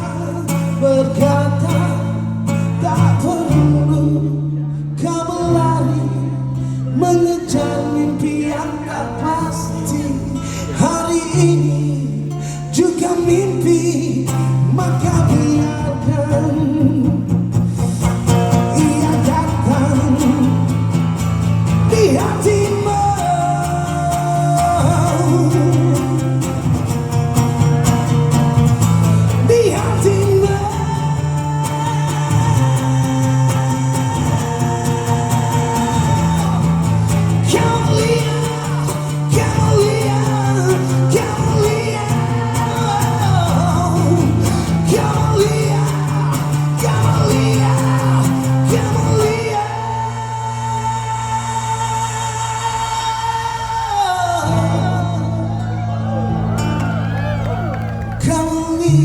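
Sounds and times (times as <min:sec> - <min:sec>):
person singing: 0:21.9 - 0:26.6, 0:29.3 - 0:59.0.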